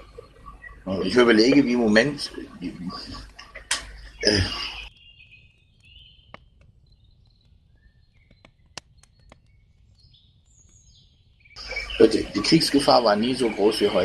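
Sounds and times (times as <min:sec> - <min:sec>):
faint bird chirping: 0:00.0 - 0:14.0
sharp clicks: 0:03.2 - 0:04.1, 0:04.9 - 0:09.6.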